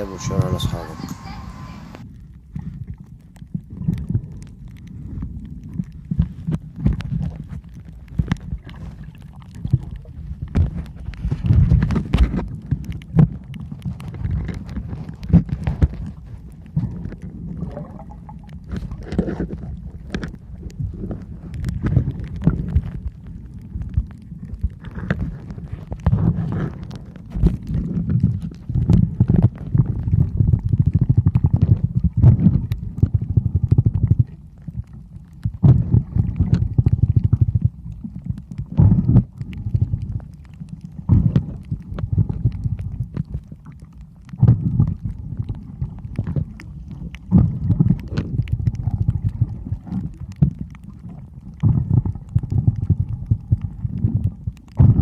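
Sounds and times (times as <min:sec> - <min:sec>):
low rumbling wind buffeting microphone: 0:00.0 - 0:43.5.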